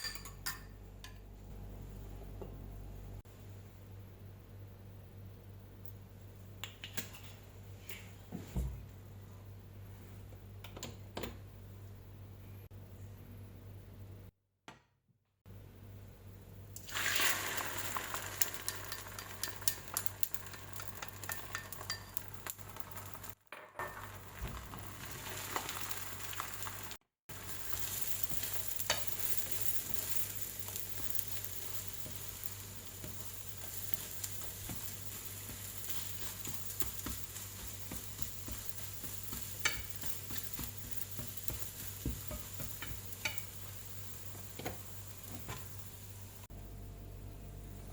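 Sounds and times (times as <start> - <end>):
egg sizzling in hot oil: 16.8 - 46.5.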